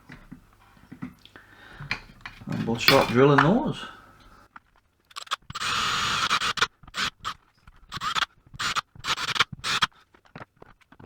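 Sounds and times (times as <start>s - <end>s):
power drill grinding through plastic: 5.1s - 10.1s.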